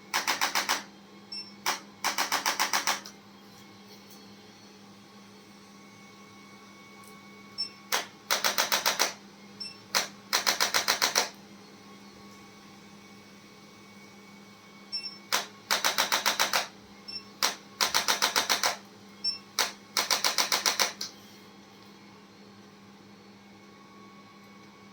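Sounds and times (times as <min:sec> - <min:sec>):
adjusting instrument rapid clicking: 0:19.6 - 0:21.1.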